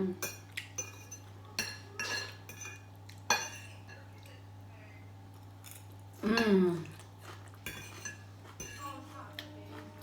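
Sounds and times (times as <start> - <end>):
cutlery clinking against a plate: 0.2 - 4.3, 7.2 - 9.1.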